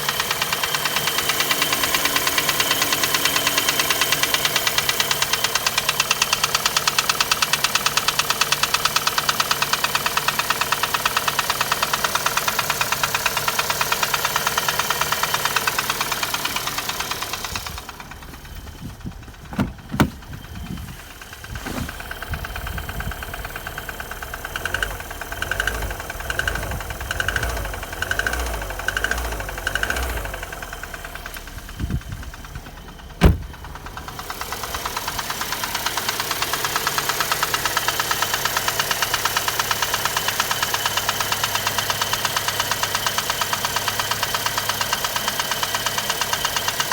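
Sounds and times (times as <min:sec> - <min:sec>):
engine knocking: 0:00.0 - 0:46.9
thumps: 0:18.2 - 0:22.1, 0:33.2 - 0:33.6.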